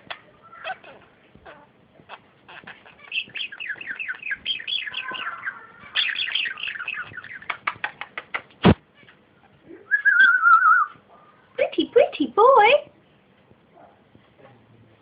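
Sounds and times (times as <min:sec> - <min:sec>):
budgerigar chattering: 0:00.0 - 0:08.6.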